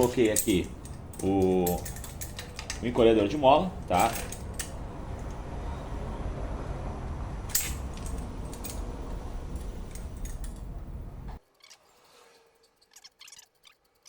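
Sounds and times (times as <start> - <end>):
metal tools clinking: 0.0 - 5.4, 7.4 - 11.4
steady low rumble: 0.0 - 11.4.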